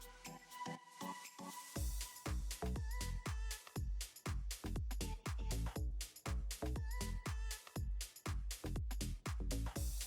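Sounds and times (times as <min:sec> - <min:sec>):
electronic dance music: 0:00.0 - 0:06.6.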